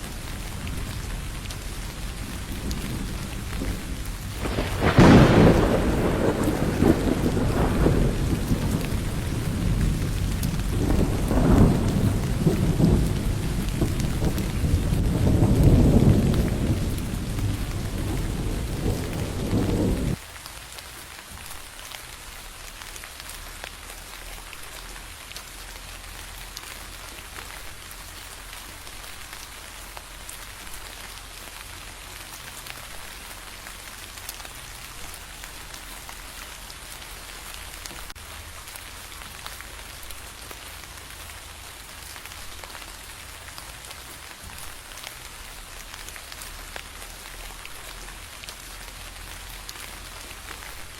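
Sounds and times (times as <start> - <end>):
thunder rumble: 0.0 - 20.2
heavy rain: 0.0 - 50.9
raindrops ticking: 0.0 - 50.9.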